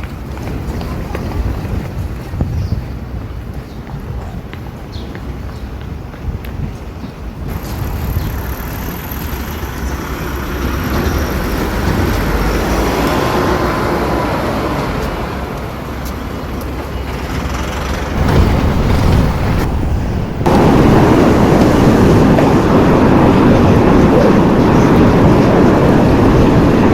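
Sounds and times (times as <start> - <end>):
vehicle passing: 17.4 - 26.9.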